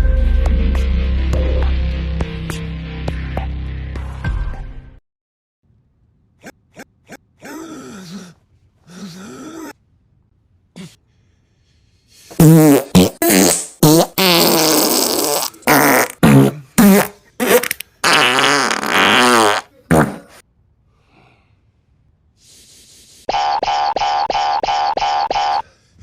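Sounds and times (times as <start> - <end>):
distorted coughing: 7.1 - 9.8, 14.3 - 20.4, 23.3 - 26.0.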